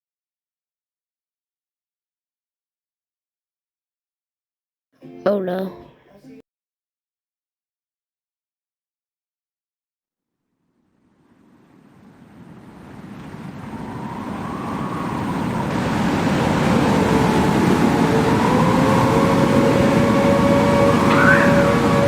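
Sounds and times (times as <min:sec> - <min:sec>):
deep rumbling wind roar: 0:11.4 - 0:22.0
wavering siren-like tone: 0:13.6 - 0:22.0.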